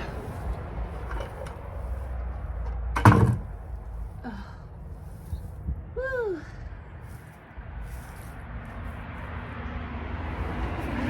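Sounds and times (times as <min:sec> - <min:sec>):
bucket thumping on ground: 0:02.9 - 0:03.6.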